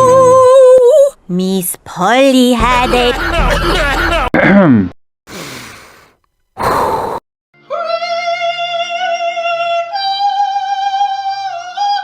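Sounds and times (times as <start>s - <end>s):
high singing voice: 2.5s - 4.0s, 7.6s - 12.0s
breathy burst: 5.3s - 7.2s.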